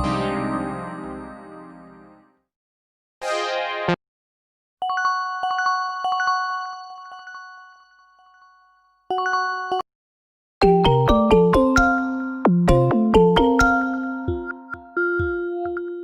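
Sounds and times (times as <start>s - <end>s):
bell-like chime ringtone: 4.8s - 9.9s
ringtone: 4.8s - 9.9s, 10.6s - 16.0s.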